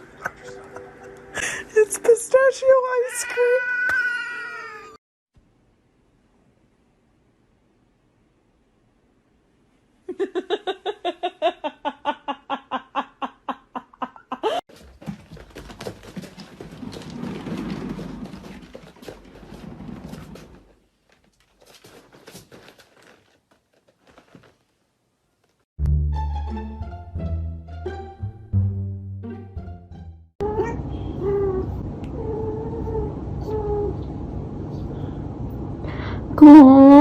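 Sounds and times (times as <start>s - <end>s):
rustling and scuffling: 14.7s - 25.6s.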